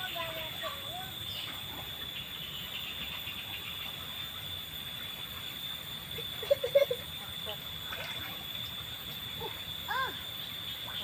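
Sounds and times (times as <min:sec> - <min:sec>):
outdoor background noise: 0:00.0 - 0:11.0.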